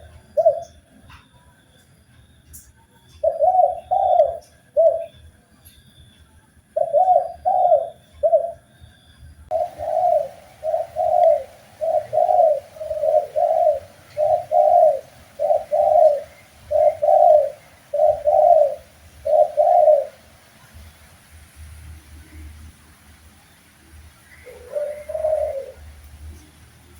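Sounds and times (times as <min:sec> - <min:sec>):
dove cooing: 0:00.0 - 0:00.8, 0:03.2 - 0:05.2, 0:06.8 - 0:08.7, 0:09.5 - 0:20.8, 0:24.2 - 0:26.4.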